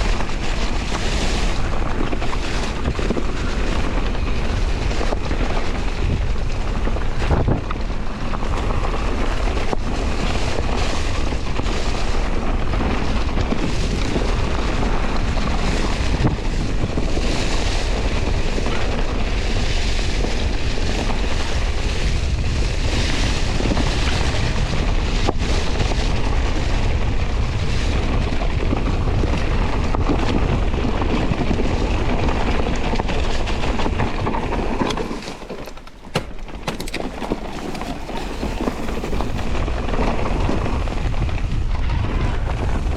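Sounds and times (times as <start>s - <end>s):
wind rushing on microphone: 0.0s - 34.4s
bike tyres rumbling and rattling: 33.5s - 40.6s.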